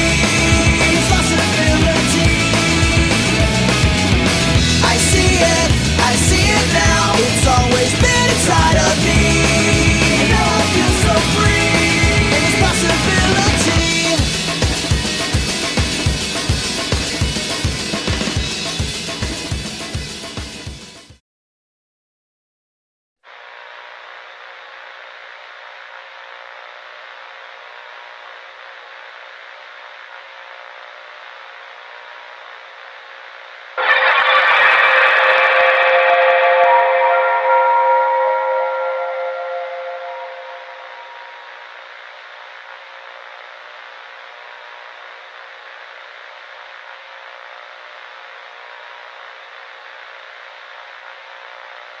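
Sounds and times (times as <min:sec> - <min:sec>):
static hiss: 0:23.3 - 0:36.6
faint steady hum: 0:23.4 - 0:52.0
faint steady tone: 0:33.8 - 0:41.8.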